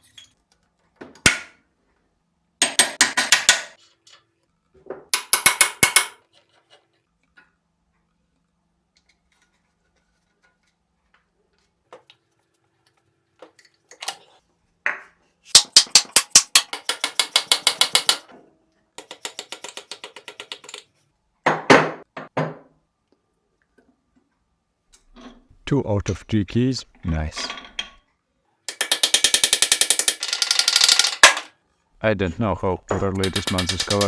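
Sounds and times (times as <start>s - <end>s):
metal clicking: 32.9s - 34.0s
metal knocks: 32.9s - 34.0s.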